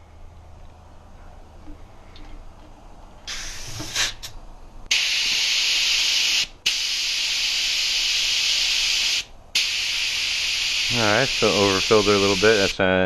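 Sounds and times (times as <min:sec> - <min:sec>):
compressed air hissing: 0:03.3 - 0:12.8.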